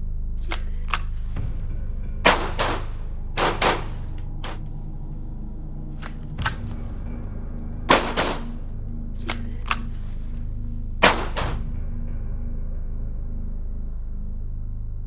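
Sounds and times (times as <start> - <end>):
low background music: 0.0 - 15.0
handgun shots: 2.3 - 4.6, 7.9 - 8.6, 11.0 - 11.6.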